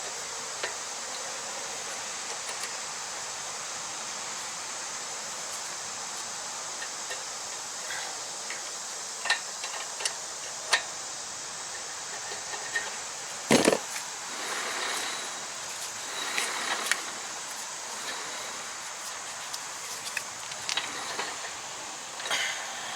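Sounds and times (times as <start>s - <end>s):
steady hiss: 0.0s - 22.9s
hand tools tapping on metal: 18.0s - 21.6s.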